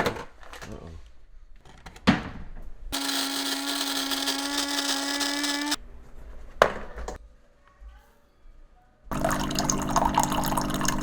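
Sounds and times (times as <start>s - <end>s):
small electric motor running: 3.0s - 5.8s.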